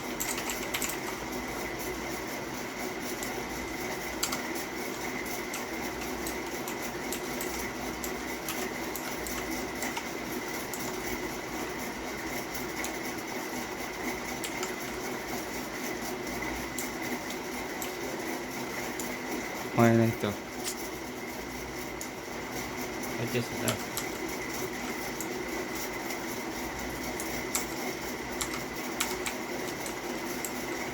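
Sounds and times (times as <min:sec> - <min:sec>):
mechanical keyboard clicking: 0:00.2 - 0:01.2, 0:04.2 - 0:04.5, 0:05.5 - 0:10.1, 0:14.4 - 0:14.9, 0:23.6 - 0:24.2, 0:27.2 - 0:30.6.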